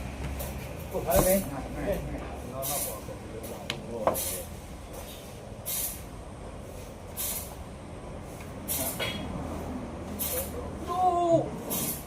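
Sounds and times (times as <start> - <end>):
short hiss: 5.7 - 6.0, 7.2 - 7.6, 10.2 - 10.5.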